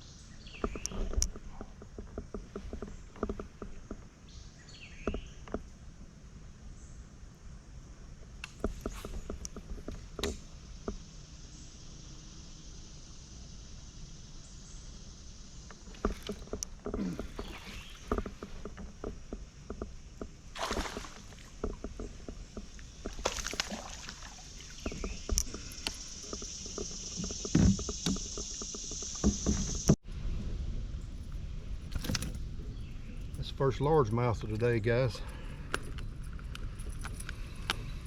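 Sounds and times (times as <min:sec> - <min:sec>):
knocks and taps on a kayak: 0:05.0 - 0:05.7
steady high hiss: 0:06.2 - 0:38.0.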